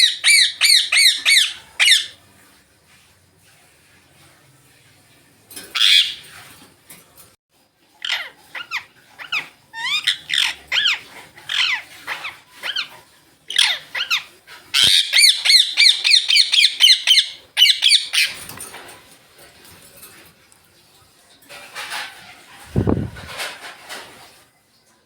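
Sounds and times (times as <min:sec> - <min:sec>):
parrot shrill calls: 0:00.0 - 0:02.2, 0:05.8 - 0:06.2, 0:08.0 - 0:18.4
parrots chirping and squawking: 0:00.0 - 0:02.2, 0:05.6 - 0:06.6, 0:07.9 - 0:19.0.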